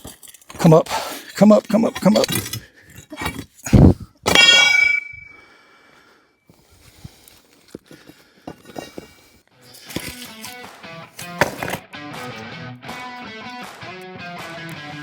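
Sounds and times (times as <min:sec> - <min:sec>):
steel tool ringing clang: 0:04.3 - 0:05.4
concrete taps and scrapes: 0:07.7 - 0:10.6.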